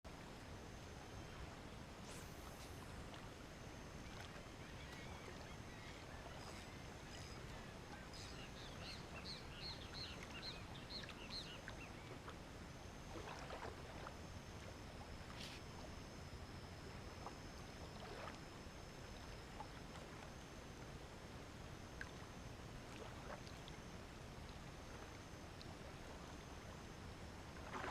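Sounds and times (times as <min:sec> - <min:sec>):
outdoor noise wash: 0:00.0 - 0:27.9
faint high whine: 0:00.1 - 0:27.9
soft rustles: 0:15.3 - 0:15.7.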